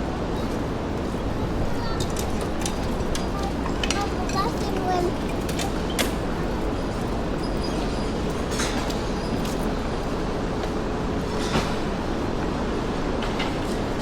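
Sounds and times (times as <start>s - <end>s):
low rumble of city traffic: 0.0s - 14.0s
sharp clicks and clanks: 1.8s - 6.2s.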